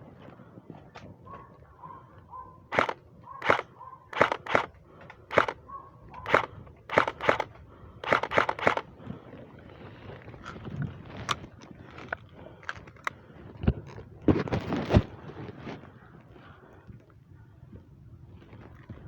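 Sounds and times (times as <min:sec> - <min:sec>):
airsoft gun shots: 0:02.7 - 0:04.7, 0:05.3 - 0:05.6, 0:06.2 - 0:08.8.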